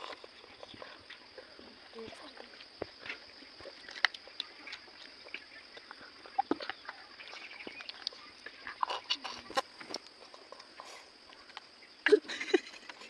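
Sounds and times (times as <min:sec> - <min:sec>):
person chewing food: 0:02.9 - 0:11.7.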